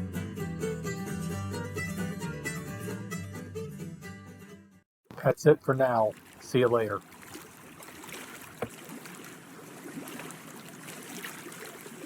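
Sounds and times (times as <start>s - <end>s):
water lapping against boat: 5.1s - 12.0s.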